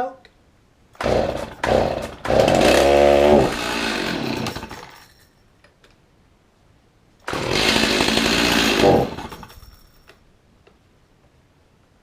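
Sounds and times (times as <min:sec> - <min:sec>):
chainsaw engine firing: 0:01.0 - 0:04.9, 0:07.3 - 0:09.6.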